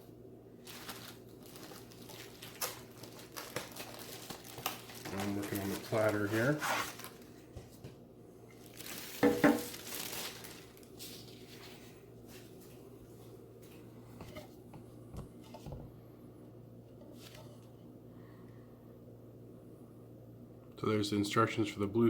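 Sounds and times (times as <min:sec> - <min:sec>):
packing material rustling: 0:00.6 - 0:07.8, 0:08.5 - 0:12.6.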